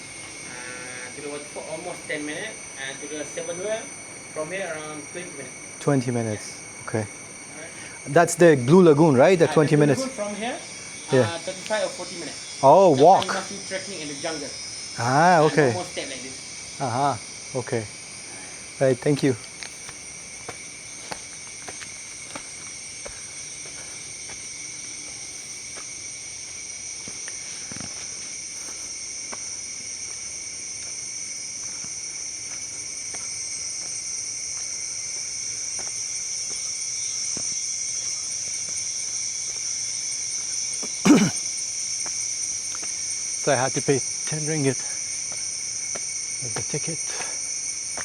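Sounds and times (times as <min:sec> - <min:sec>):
insects shrilling: 0:00.0 - 0:48.0.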